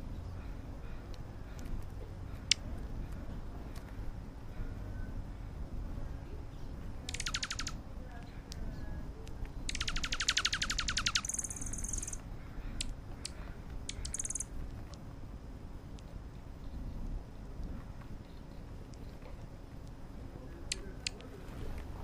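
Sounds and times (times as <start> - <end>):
small birds trilling: 6.5 - 8.9, 9.6 - 14.6
sharp clicks: 7.0 - 8.6, 9.2 - 12.2, 12.8 - 15.0, 20.6 - 21.3.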